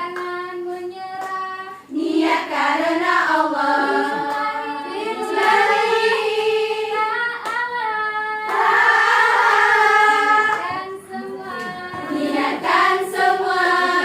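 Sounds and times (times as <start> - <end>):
group singing devotional song: 0.0 - 14.0.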